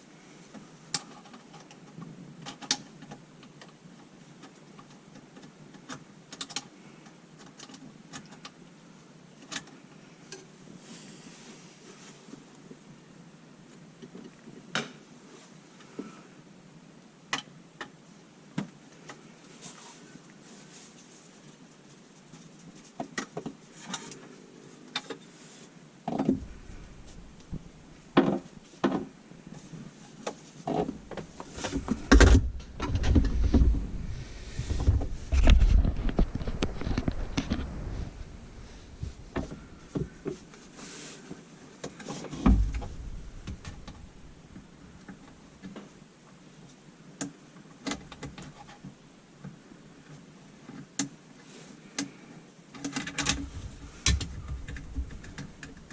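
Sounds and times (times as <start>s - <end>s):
bumping and scraping: 26.1s - 41.0s, 41.9s - 45.2s, 53.2s - 55.9s.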